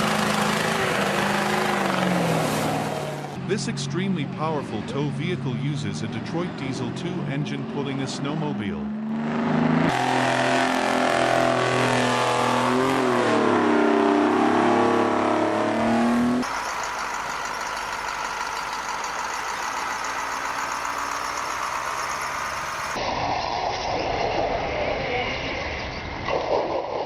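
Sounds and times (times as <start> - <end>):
heavy vehicle engine revving: 0.0 - 4.3, 4.9 - 23.0
engine running steadily: 14.8 - 23.0.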